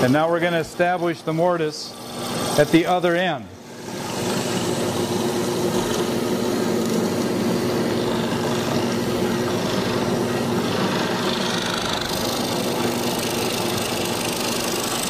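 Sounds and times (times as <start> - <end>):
drill press motor hum: 3.5 - 15.0
chisel cutting into wood: 3.7 - 15.0.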